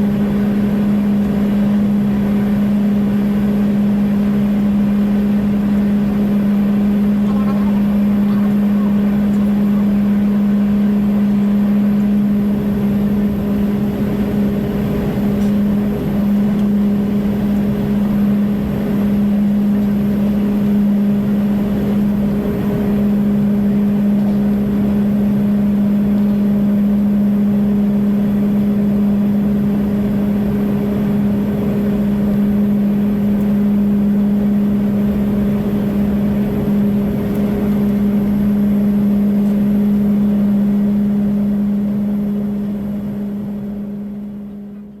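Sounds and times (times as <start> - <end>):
airliner engine drone: 0.0 - 45.0.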